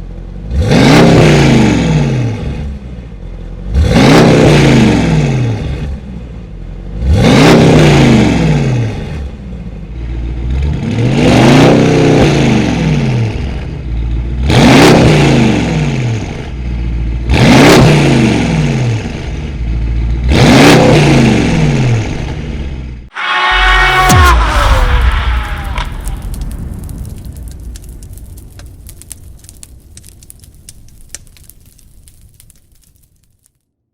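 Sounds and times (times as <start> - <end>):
car engine revving: 0.4 - 2.7, 3.6 - 6.0, 6.9 - 9.3, 10.1 - 13.6, 14.3 - 16.5, 17.3 - 31.5.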